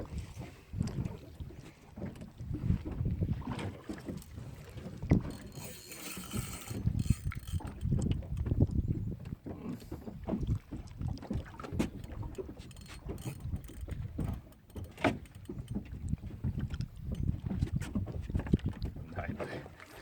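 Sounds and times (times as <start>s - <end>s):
wind rumbling on microphone: 0.0s - 19.4s
sharp clicks and knocks: 5.1s - 8.6s, 11.7s - 17.9s.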